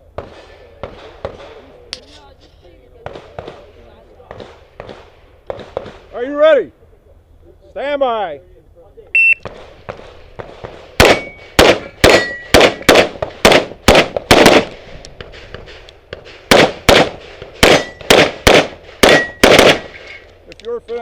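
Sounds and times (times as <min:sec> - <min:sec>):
pistol shots: 0:03.0 - 0:06.1, 0:09.4 - 0:20.3
steel targets ringing: 0:11.1 - 0:12.9.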